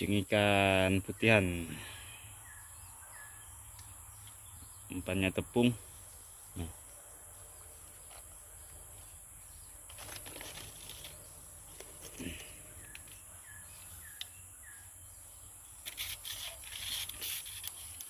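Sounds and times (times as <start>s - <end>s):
rustles and clicks: 9.8s - 13.3s.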